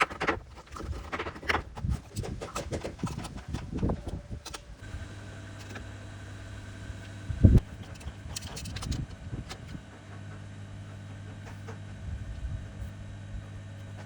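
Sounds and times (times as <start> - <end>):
steady motor hum: 0.0 - 14.0.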